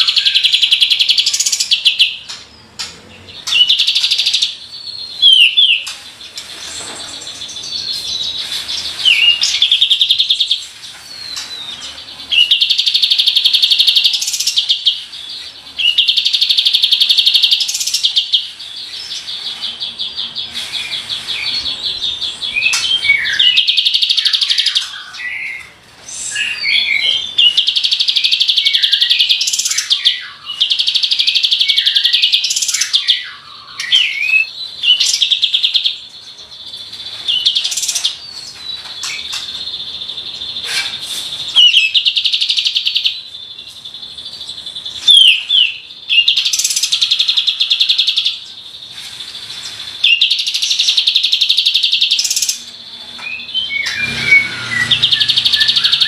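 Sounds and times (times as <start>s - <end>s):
songbird sweeping chirps: 0.0s - 56.0s.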